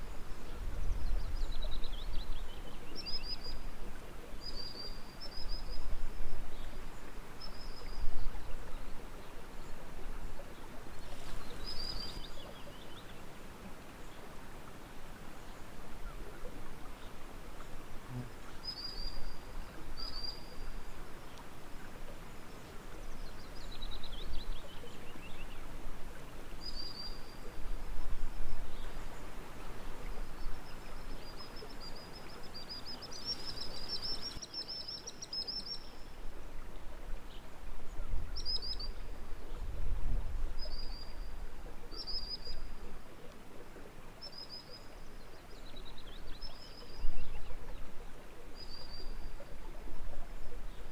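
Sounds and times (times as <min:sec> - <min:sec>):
birds singing: 0:30.3 - 0:36.0.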